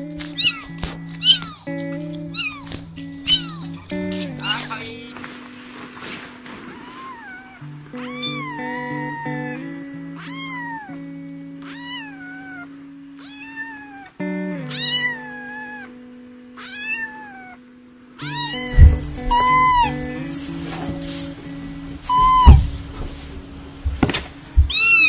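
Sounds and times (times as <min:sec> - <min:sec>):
background music with held notes: 0:00.0 - 0:16.6, 0:18.0 - 0:25.0
kitten meowing: 0:00.4 - 0:01.6, 0:02.3 - 0:03.6, 0:06.7 - 0:11.0, 0:11.6 - 0:14.1, 0:14.7 - 0:16.0, 0:16.6 - 0:17.6, 0:18.2 - 0:22.9, 0:24.5 - 0:25.0
loud low thump: 0:18.7 - 0:21.4, 0:22.0 - 0:24.7.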